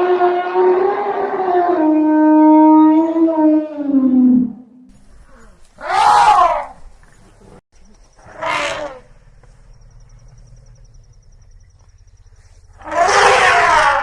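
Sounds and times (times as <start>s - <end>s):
elephant trumpeting: 5.2s - 6.9s, 8.2s - 9.2s, 12.7s - 14.0s
elephant call: 5.2s - 14.0s.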